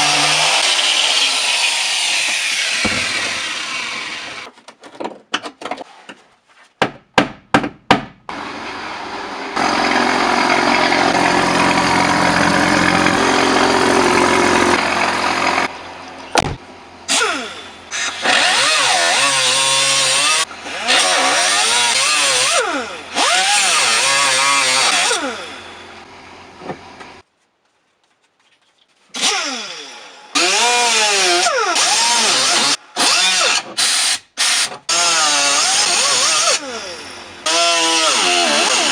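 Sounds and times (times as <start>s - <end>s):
power grinder cutting sheet metal: 0.0s - 4.5s, 8.3s - 15.8s, 17.1s - 26.0s, 29.2s - 38.9s
sharp knocks: 2.7s - 4.5s, 6.8s - 8.2s, 16.4s - 16.6s.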